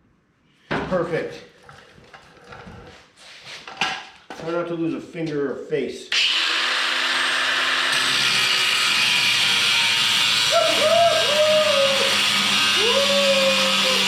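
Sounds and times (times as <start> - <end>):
angle grinder cutting metal: 6.1 - 14.0.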